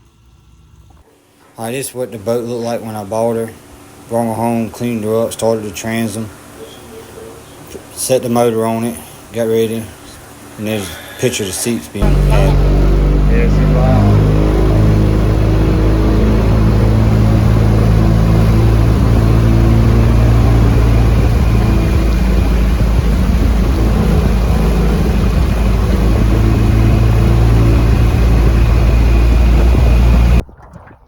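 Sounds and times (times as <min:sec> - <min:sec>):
outboard motor running: 0:03.6 - 0:30.4
wind and water rushing: 0:12.0 - 0:30.4.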